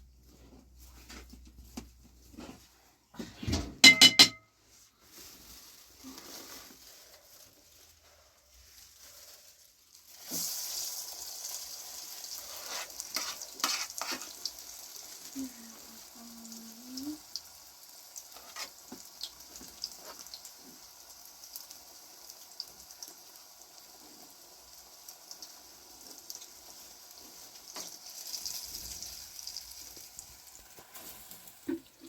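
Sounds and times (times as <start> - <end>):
food sizzling in a pan: 7.8 - 32.0.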